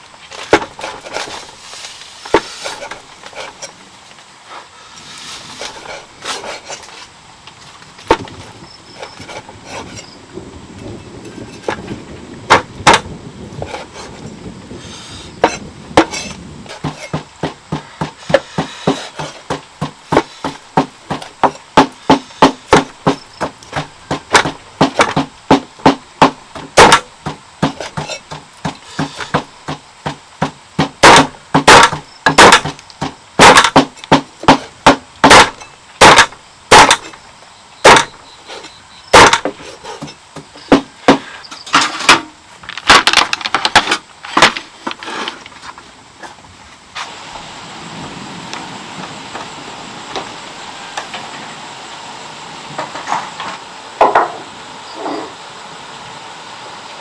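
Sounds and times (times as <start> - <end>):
rhythmic knocking on wood: 12.5 - 13.9, 15.4 - 37.2, 37.8 - 38.2, 39.1 - 41.3.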